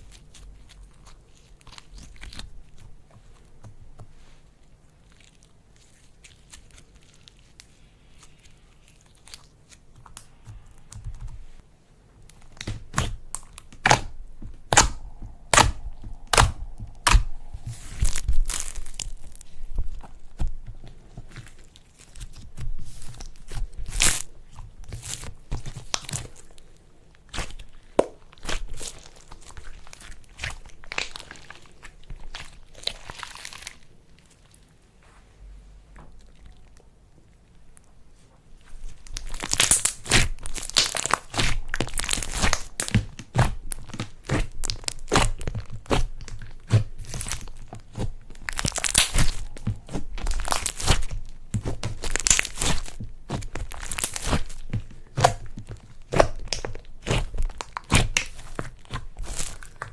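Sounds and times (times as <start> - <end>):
slime popping and crackling: 12.3 - 26.6, 27.3 - 34.5, 38.8 - 59.9.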